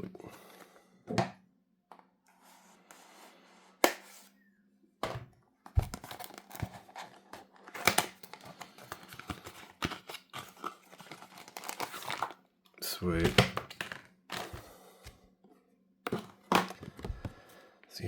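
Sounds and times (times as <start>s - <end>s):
packaging crinkling and rustling: 5.7s - 12.5s, 13.1s - 14.7s, 16.1s - 17.5s.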